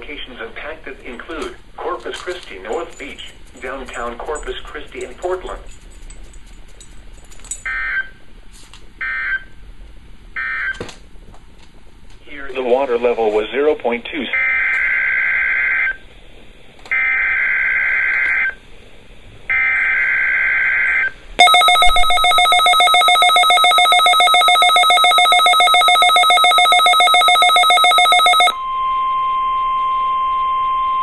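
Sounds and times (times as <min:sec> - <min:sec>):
steady warning alarm tone: 0:19.5 - 0:31.0
rapid pulsing electronic ring: 0:21.4 - 0:28.5.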